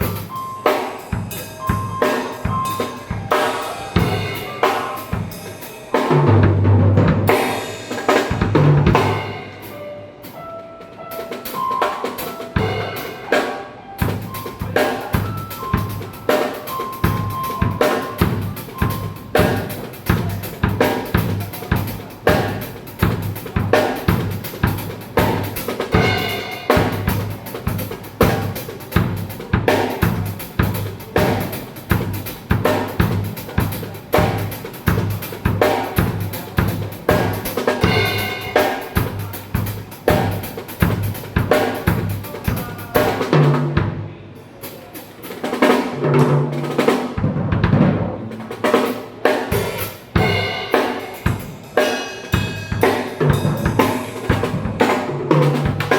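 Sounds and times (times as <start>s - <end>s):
snare drum: 0.0s - 43.8s, 45.3s - 55.9s
cymbals: 0.0s - 55.9s
bass drum: 8.3s - 9.6s, 17.0s - 43.0s
tom drum hits: 12.3s - 16.2s, 17.1s - 33.6s, 34.2s - 39.3s.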